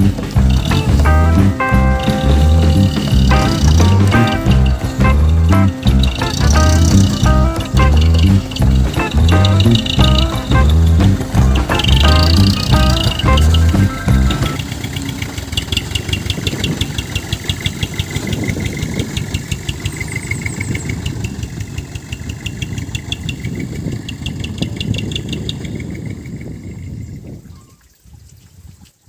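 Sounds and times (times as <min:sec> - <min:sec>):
diesel truck engine clattering: 0:00.0 - 0:26.4.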